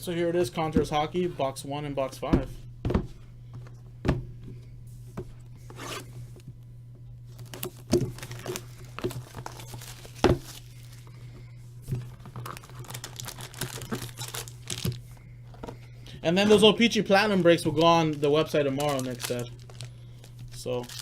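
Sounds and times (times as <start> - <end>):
plastic shrink wrap tearing: 7.3 - 11.0, 12.0 - 15.0, 17.7 - 21.0.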